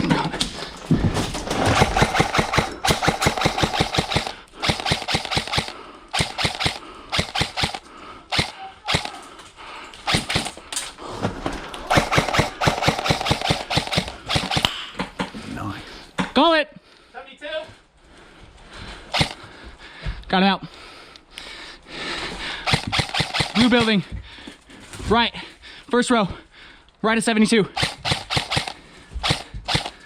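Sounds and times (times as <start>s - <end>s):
airsoft guns firing full auto: 1.6s - 9.3s, 10.1s - 10.6s, 11.9s - 14.8s, 19.1s - 19.4s, 22.7s - 24.0s, 27.8s - 30.0s.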